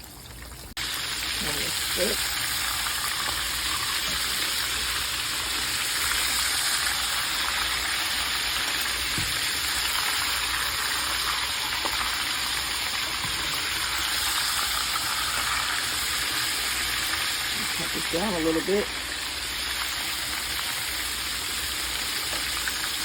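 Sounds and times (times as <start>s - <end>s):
steaks sizzling in hot oil: 0.0s - 23.0s.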